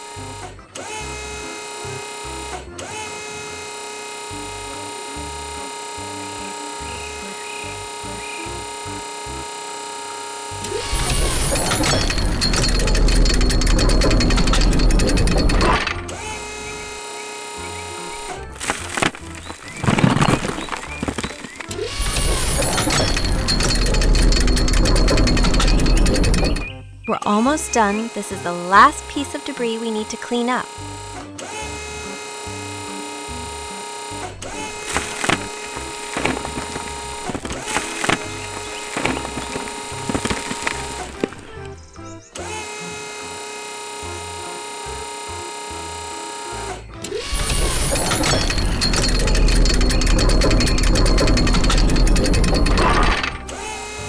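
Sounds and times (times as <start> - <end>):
background music with bass: 4.3 - 9.5, 20.9 - 29.4
hammering rattle over deep rumble: 10.6 - 17.0, 18.1 - 26.8, 34.3 - 42.2, 47.1 - 54.0
sharp clatters: 10.6 - 17.0, 18.2 - 26.7, 34.4 - 42.0, 47.1 - 54.0.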